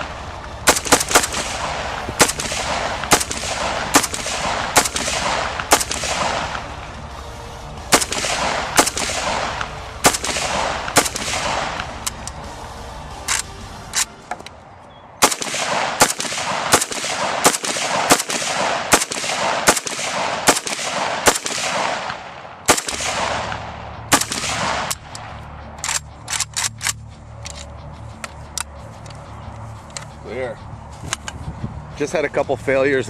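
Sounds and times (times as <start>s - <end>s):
rifle single shots: 0.0s - 6.9s, 7.9s - 12.3s, 15.2s - 27.0s.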